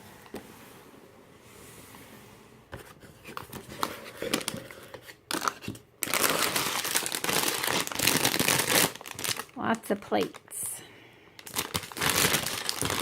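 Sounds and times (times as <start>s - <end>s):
plastic bags crinkling: 3.3s - 10.8s, 11.4s - 13.0s.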